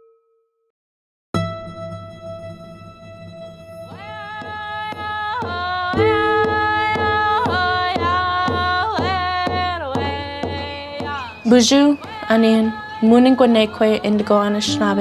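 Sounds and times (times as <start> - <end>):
sliding melodic line: 6.0 - 8.2, 10.9 - 15.0.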